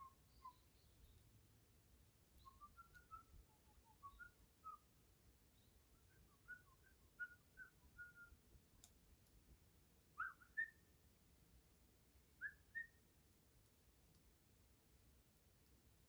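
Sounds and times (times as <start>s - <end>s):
faint clicks: 2.4s - 3.2s, 8.7s - 9.4s, 13.2s - 14.4s
bird whistling calls: 3.9s - 4.8s, 10.2s - 10.8s, 12.4s - 13.0s.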